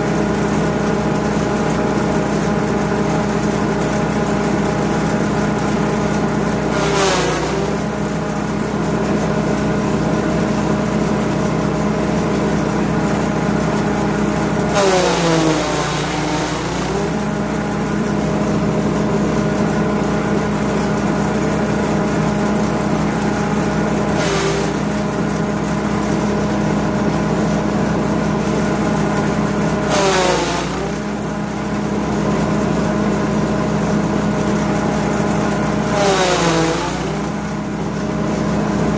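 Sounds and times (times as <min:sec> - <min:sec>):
petrol engine running: 0:00.0 - 0:38.9
chopping noise of blades: 0:06.7 - 0:07.8, 0:24.2 - 0:24.9, 0:29.9 - 0:31.0, 0:35.9 - 0:37.4.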